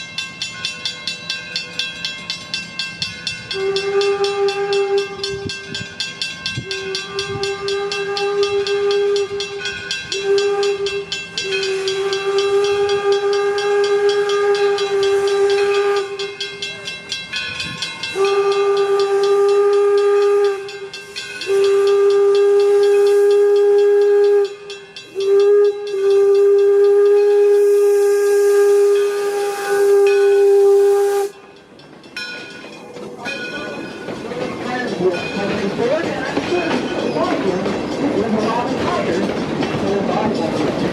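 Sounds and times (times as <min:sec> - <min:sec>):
steam hissing: 0:02.6 - 0:40.9
steam locomotive whistle: 0:03.4 - 0:05.8, 0:06.5 - 0:16.8, 0:18.0 - 0:31.6.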